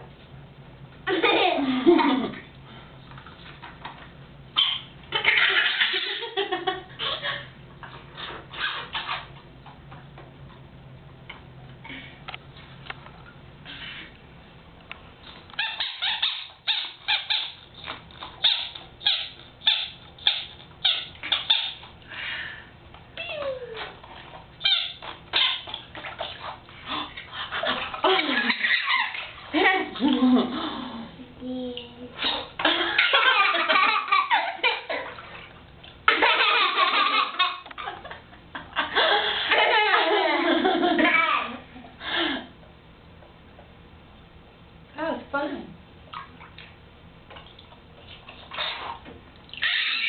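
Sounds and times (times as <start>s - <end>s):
baby laughing: 4.6s - 7.5s, 27.4s - 30.5s, 32.4s - 35.2s, 36.1s - 38.2s, 39.0s - 41.7s, 49.6s - 50.0s
squeaky dog toy squeaking: 15.6s - 17.6s.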